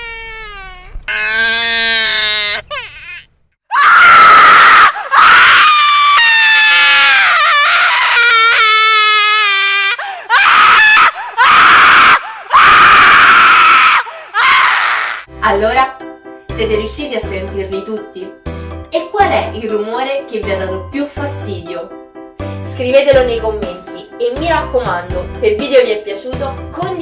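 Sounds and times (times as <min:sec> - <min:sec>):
person screaming: 0:03.7 - 0:15.3.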